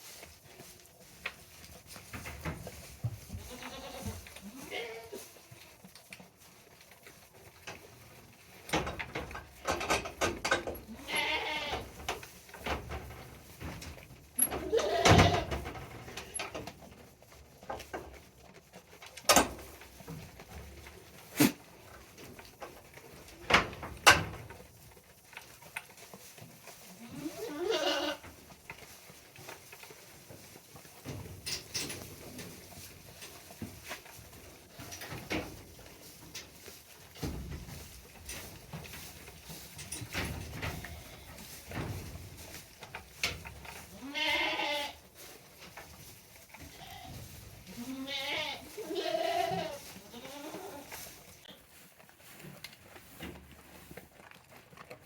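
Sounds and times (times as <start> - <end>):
goats bleating: 3.4 - 5.3, 10.9 - 11.8, 14.6 - 15.5, 27.0 - 28.2, 43.9 - 45.0, 47.7 - 50.9.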